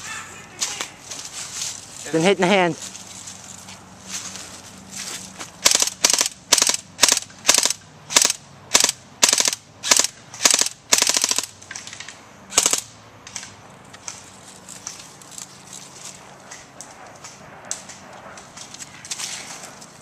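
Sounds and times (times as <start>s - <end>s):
airsoft rifle firing bursts: 5.6s - 11.5s, 12.5s - 12.8s.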